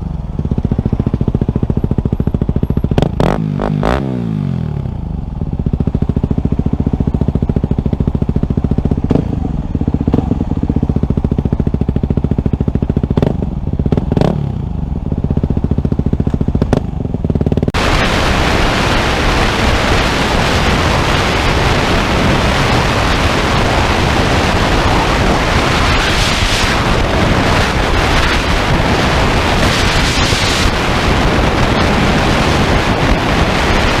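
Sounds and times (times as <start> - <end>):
dirt bike engine running: 0.0 - 34.0
loud dense rushing noise: 16.8 - 34.0.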